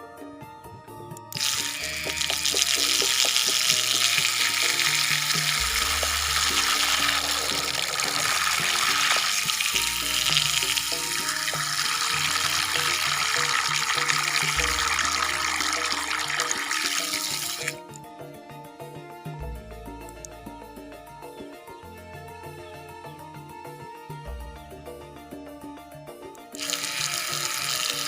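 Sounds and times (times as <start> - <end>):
quiet background music: 0.0 - 28.0
water rushing and splashing: 1.4 - 17.8.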